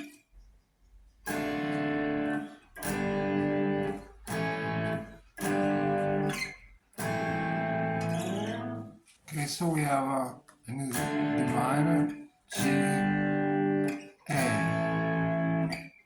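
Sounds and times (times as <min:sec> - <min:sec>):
electric guitar chords ringing: 0:01.3 - 0:08.9, 0:11.0 - 0:15.8.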